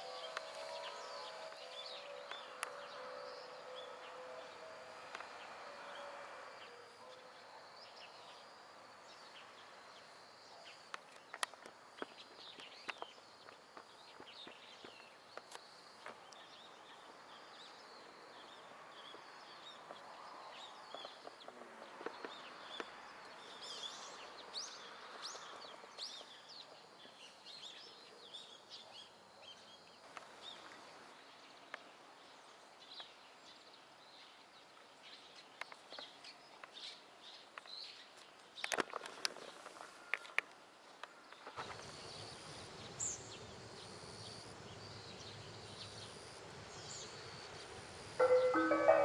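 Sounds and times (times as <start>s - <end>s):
faint outdoor background noise: 0.0s - 49.0s
small birds chirping: 41.1s - 49.0s.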